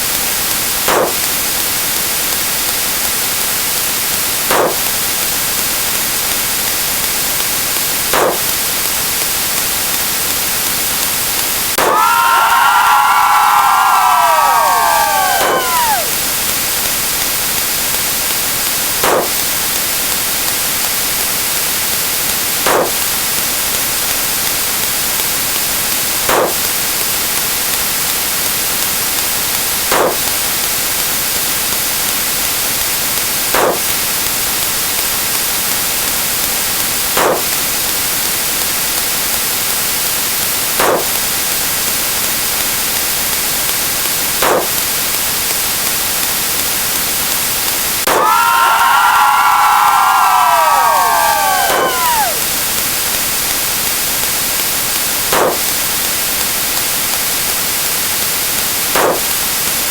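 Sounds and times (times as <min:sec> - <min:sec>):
static hiss: 0:00.0 - 0:59.9
downward sliding tone: 0:50.6 - 0:52.4.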